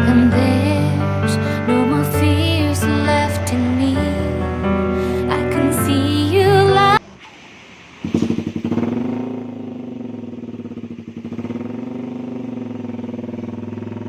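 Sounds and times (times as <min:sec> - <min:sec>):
motorcycle engine revving and idling: 0:08.0 - 0:14.0.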